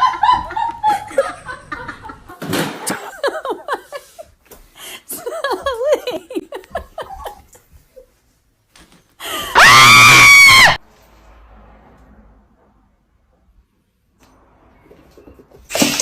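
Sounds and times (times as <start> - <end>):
shrill scream: 9.4 - 10.8.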